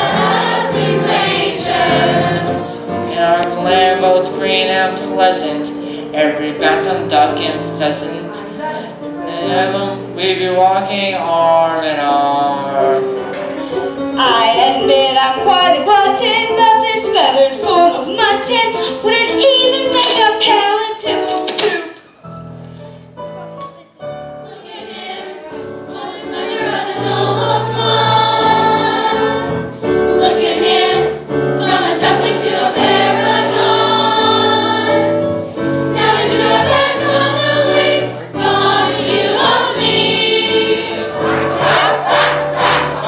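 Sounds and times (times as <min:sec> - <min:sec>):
cast singing in chorus: 0:35.9 - 0:43.0.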